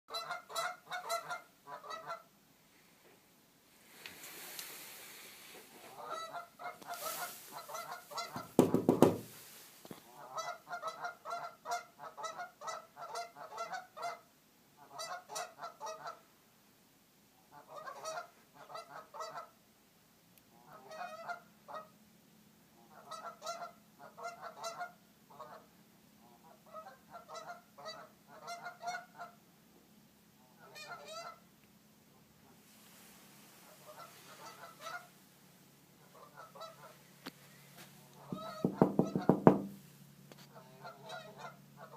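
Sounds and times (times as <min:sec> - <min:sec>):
geese honking: 0:00.1 - 0:02.3, 0:05.8 - 0:08.6, 0:10.0 - 0:16.2, 0:17.5 - 0:19.6, 0:20.6 - 0:21.9, 0:22.8 - 0:29.4, 0:30.4 - 0:31.4, 0:33.6 - 0:35.2, 0:36.0 - 0:37.1, 0:38.1 - 0:39.3, 0:40.4 - 0:41.9.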